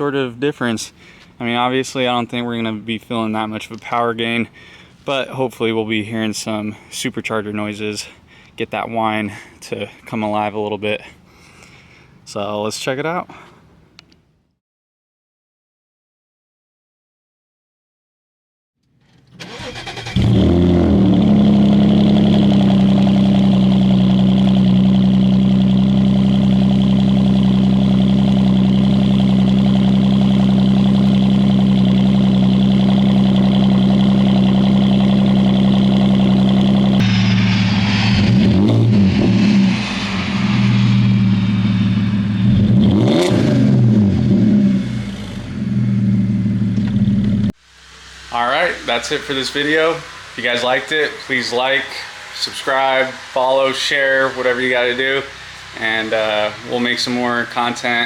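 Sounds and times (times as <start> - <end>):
car engine starting and idling: 19.0 - 48.0
car engine revving: 19.4 - 47.5.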